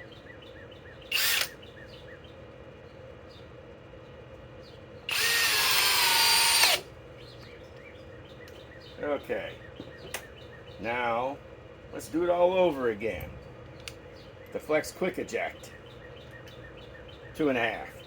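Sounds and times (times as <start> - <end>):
cordless drill whining: 1.1 - 1.5, 5.1 - 6.8.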